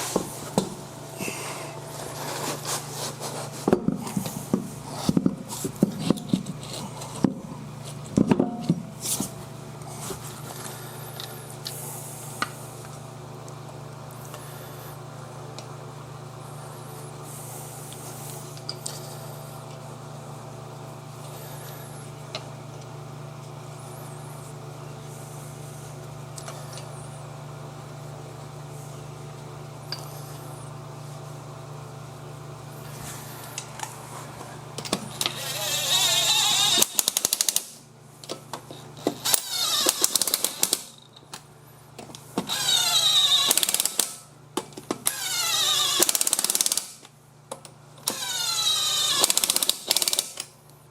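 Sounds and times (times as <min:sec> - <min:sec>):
steady low hum: 0:00.0 - 0:46.0
impact wrench spinning lug nuts: 0:34.8 - 0:37.8, 0:39.0 - 0:41.1, 0:42.4 - 0:44.2, 0:45.0 - 0:47.0, 0:48.0 - 0:50.5.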